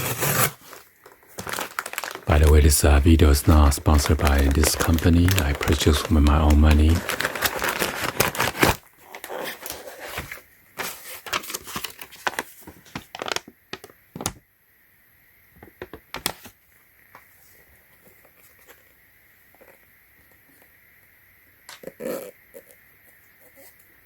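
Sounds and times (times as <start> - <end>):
packaging crinkling and tearing: 0.0 - 14.3.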